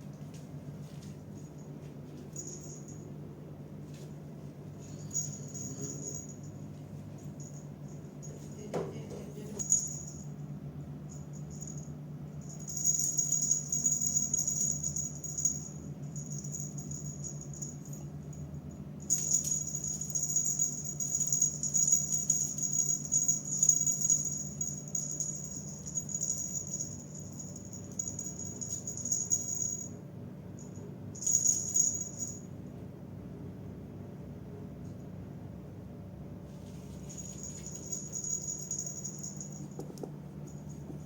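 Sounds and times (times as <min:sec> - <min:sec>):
low steady hum: 0:00.0 - 0:41.0
high-pitched jingling: 0:04.8 - 0:06.6, 0:11.1 - 0:18.1, 0:19.0 - 0:30.0, 0:30.6 - 0:32.5, 0:37.1 - 0:39.8.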